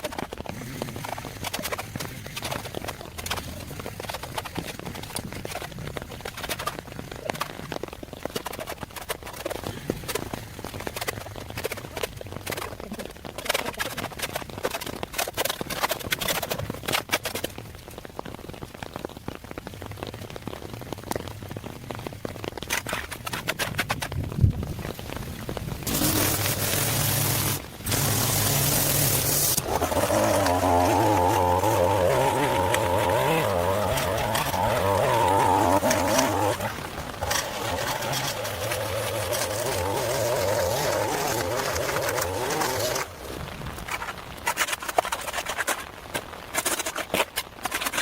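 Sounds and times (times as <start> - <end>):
water dripping: 0.0 - 48.0
string trimmer running: 25.9 - 43.1.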